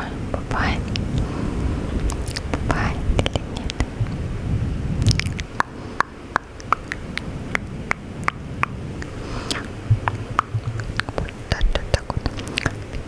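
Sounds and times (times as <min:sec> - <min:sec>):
low rumble: 0:00.0 - 0:13.0
wet tongue and lip clicks: 0:02.0 - 0:04.2, 0:05.0 - 0:13.0.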